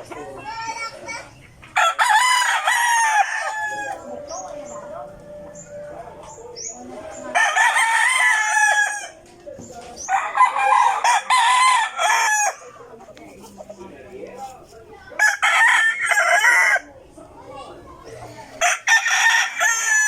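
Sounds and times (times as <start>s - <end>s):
roosters crowing: 1.6s - 9.3s, 10.0s - 13.9s, 15.2s - 17.0s, 18.4s - 20.0s.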